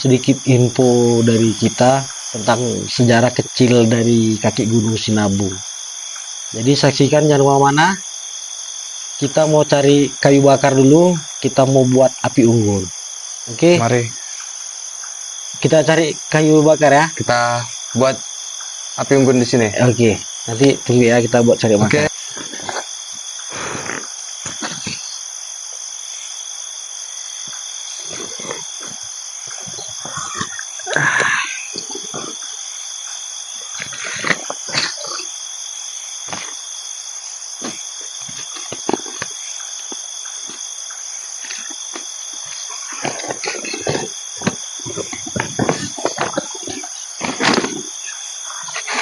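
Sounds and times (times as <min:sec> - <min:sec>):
night insects trilling: 0:00.0 - 0:49.0
rustles and snaps: 0:37.6 - 0:40.7.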